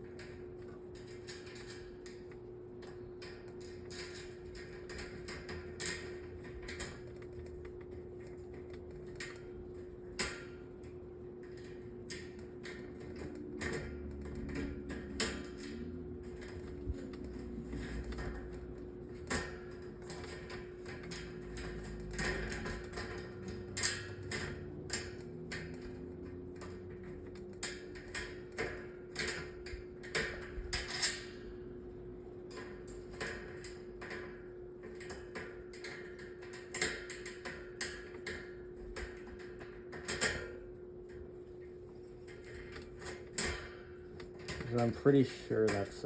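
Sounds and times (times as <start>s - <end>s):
steady hum: 0.0s - 46.0s
clicks and light metal taps: 32.5s - 46.0s.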